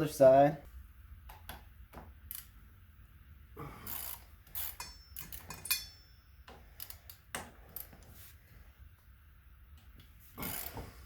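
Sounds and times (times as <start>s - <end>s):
metallic ringing: 4.7s - 6.5s.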